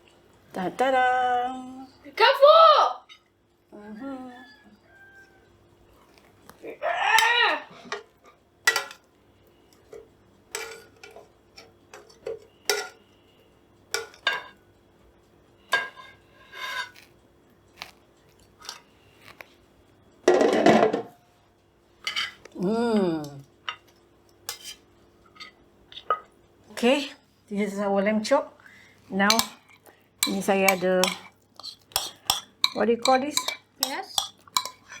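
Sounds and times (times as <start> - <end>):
faint steady hum: 0.0 - 35.0
plates and cutlery clinking: 7.8 - 9.1, 9.8 - 14.7, 15.6 - 17.1, 20.3 - 21.2, 22.0 - 22.5, 23.6 - 26.4, 29.2 - 35.0.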